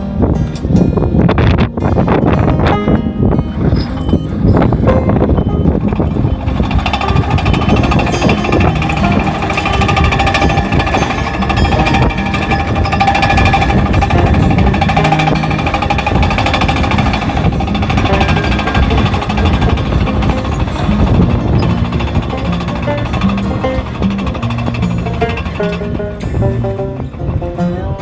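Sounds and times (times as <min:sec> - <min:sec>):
earthmoving machine clattering: 0:00.5 - 0:28.0.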